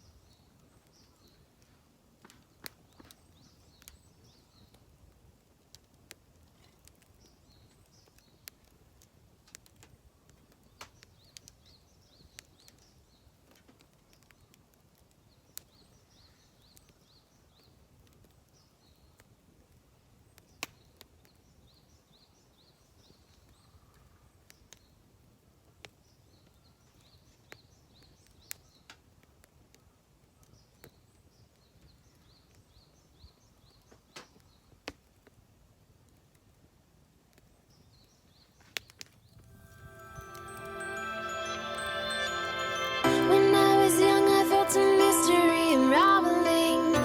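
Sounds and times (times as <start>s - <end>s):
campfire crackling: 0.4s - 21.7s, 33.6s - 47.0s.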